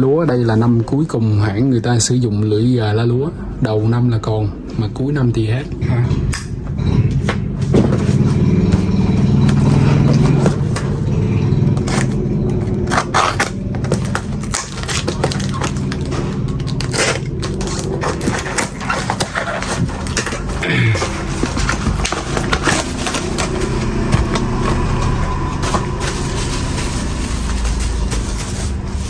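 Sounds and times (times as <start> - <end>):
low steady hum: 0.0 - 29.0
packaging rustling and scraping: 7.1 - 29.0.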